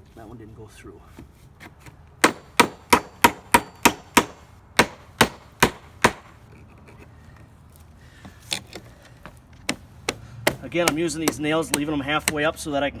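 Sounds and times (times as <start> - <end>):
hammer striking nail into wood: 2.2 - 6.4, 9.7 - 12.5.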